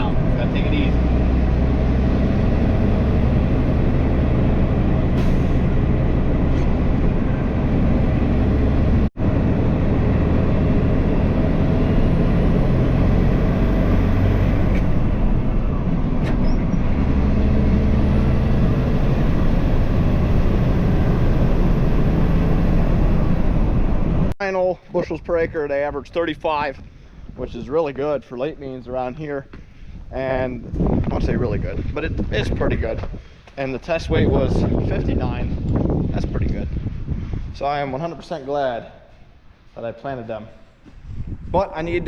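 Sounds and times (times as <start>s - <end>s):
truck engine running: 0.0s - 24.3s
road noise: 0.0s - 42.0s.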